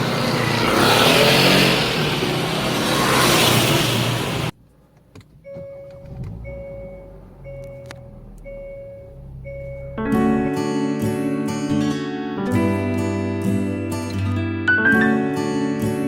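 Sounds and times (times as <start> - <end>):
loud steady rushing noise: 0.0 - 4.5
low engine hum: 5.4 - 10.5
car warning chime beeping: 5.4 - 10.6
acoustic guitar music: 6.1 - 16.0.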